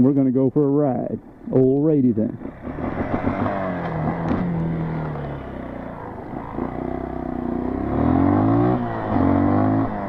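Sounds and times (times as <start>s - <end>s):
dirt bike engine revving: 2.4s - 10.0s.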